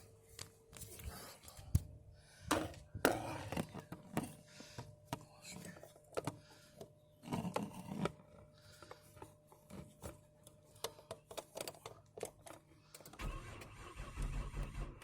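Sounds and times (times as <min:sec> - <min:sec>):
starter cranking engine: 0:13.2 - 0:15.0.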